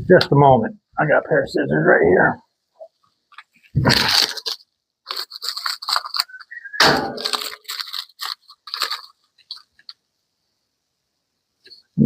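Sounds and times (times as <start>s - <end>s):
plastic packaging crinkling: 3.3s - 10.0s
scissors cutting plastic: 3.9s - 9.9s.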